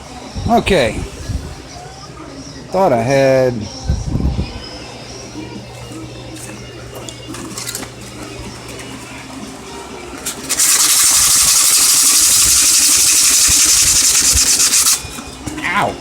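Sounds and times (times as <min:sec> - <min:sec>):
small power tool whirring: 0:10.5 - 0:15.0.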